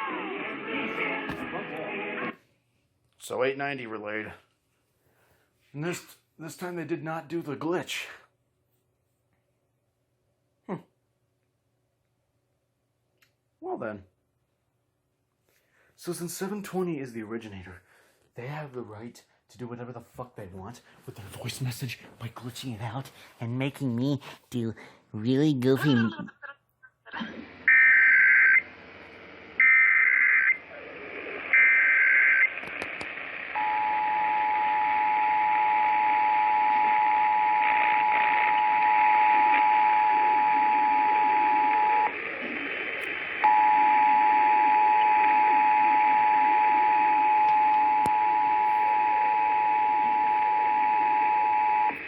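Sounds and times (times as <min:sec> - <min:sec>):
radio hiss: 0:00.0 - 0:02.4, 0:27.4 - 0:33.6, 0:40.6 - 0:43.5
buzzing data screeches: 0:31.5 - 0:32.5.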